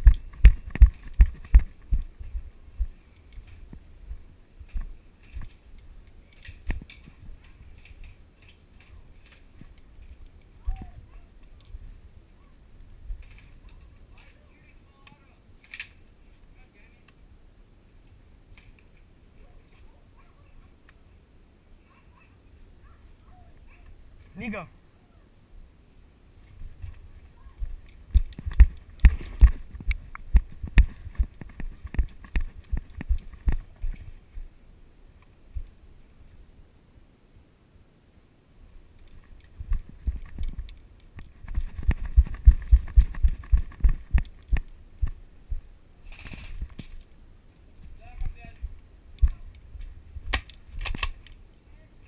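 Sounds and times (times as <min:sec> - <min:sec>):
quick footsteps on ground: 0:00.0 - 0:05.8, 0:26.4 - 0:34.6, 0:39.1 - 0:51.2
wind rumble on microphone: 0:00.0 - 0:08.2, 0:26.4 - 0:34.6, 0:39.1 - 0:47.0
clothing and gear rustling: 0:26.4 - 0:34.5, 0:39.0 - 0:48.7.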